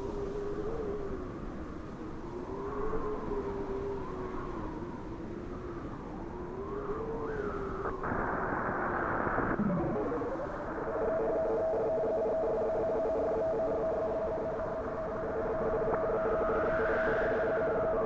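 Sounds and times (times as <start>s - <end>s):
burst of static: 8.0s - 10.3s.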